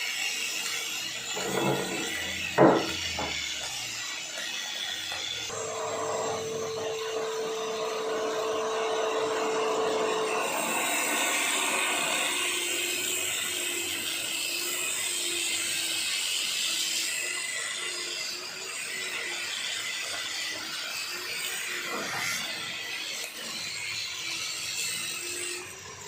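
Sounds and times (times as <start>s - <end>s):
motor whining: 0.5s - 15.9s.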